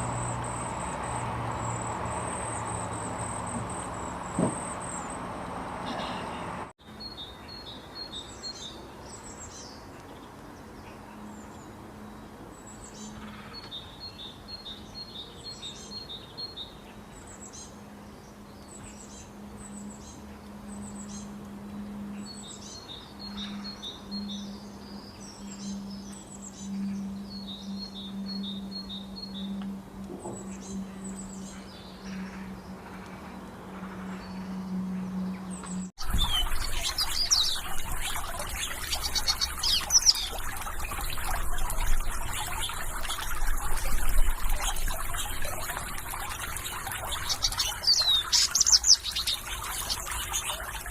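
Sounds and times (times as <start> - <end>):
steady low hum: 0.0 - 6.7, 23.2 - 50.9
birds singing and chirping: 18.6 - 50.9.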